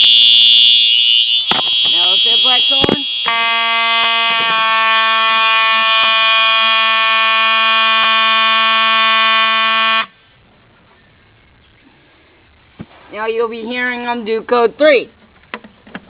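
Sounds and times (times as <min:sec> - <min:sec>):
buzzy fire alarm horn: 0:00.0 - 0:10.2
shrill high alarm tone: 0:00.0 - 0:10.2.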